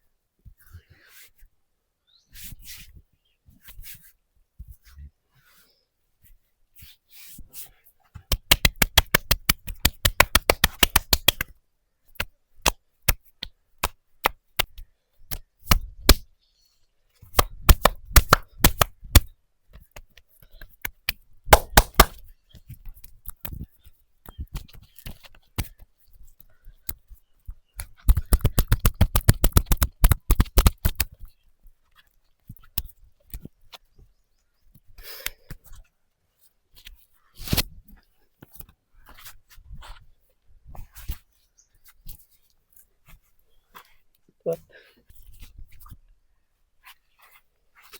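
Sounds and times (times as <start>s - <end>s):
hands slapping skin in massage: 8.2s - 11.6s, 12.2s - 16.3s, 17.3s - 31.3s.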